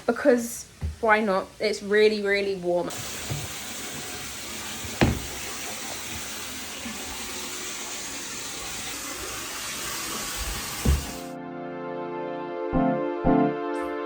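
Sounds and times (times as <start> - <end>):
tap water filling bathtub: 2.9 - 11.3
short knock: 4.8 - 5.4.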